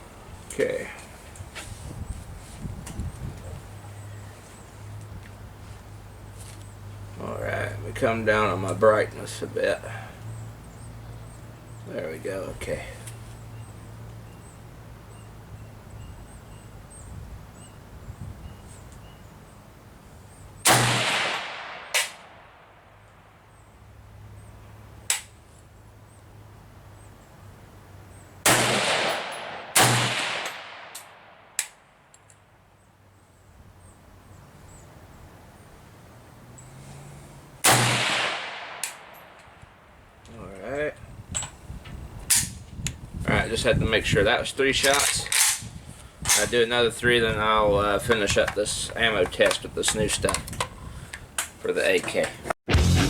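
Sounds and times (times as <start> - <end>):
rifle shots: 20.7 - 22.4, 28.4 - 31.6, 37.6 - 39.3
faint sharp cracks: 37.7 - 40.4.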